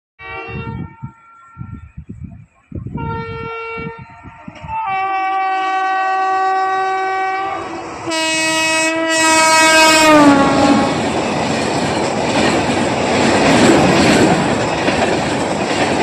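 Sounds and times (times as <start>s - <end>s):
locomotive air horn blasts: 0.2s - 1.9s, 3.0s - 11.0s
rumble and knocks of train: 3.9s - 5.2s, 8.0s - 16.0s.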